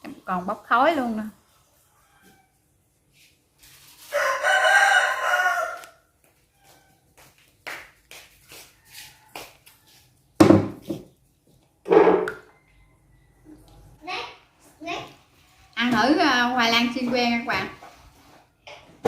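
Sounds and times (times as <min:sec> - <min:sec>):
rooster crowing: 0:04.0 - 0:06.8, 0:08.8 - 0:10.1.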